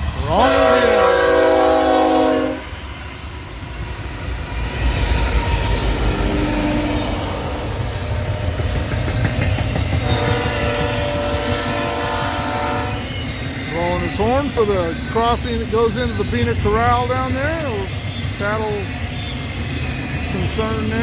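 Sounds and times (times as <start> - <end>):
freight train rumble: 0.0 - 21.0
train air horn: 0.3 - 2.8, 9.9 - 14.2.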